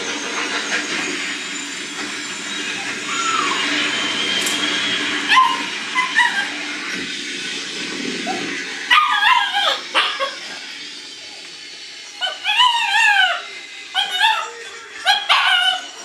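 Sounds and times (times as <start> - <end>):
puppies whimpering and yipping: 2.5 - 6.8, 8.2 - 10.7, 12.1 - 16.0.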